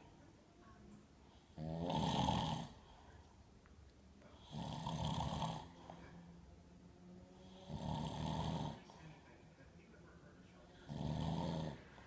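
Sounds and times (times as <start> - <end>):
man snoring: 1.5 - 2.8, 4.4 - 6.0, 7.4 - 9.0, 10.7 - 12.0.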